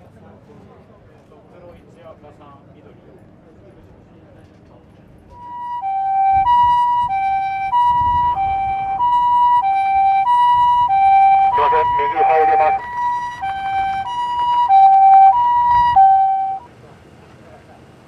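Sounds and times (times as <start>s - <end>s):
ambulance two-tone siren: 5.3s - 16.7s.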